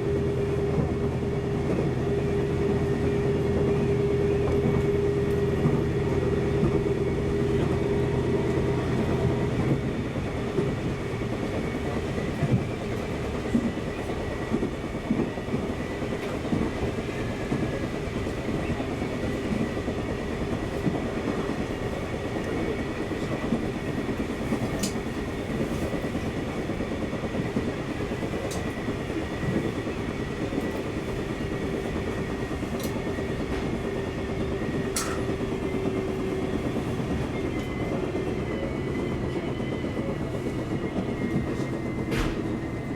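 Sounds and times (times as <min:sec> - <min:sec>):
train running on rails: 0:00.0 - 0:42.9.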